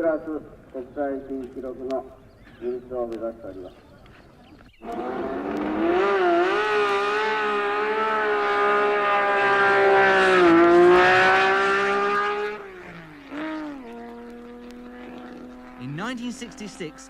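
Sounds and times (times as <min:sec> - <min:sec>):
lower steady engine note: 0:04.8 - 0:17.0
race car engine at high revs: 0:04.8 - 0:17.0.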